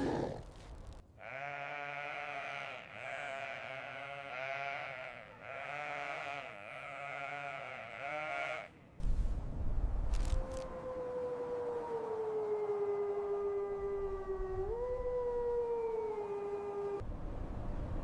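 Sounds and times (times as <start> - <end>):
voice giving bleat-like cries: 1.2 - 8.7.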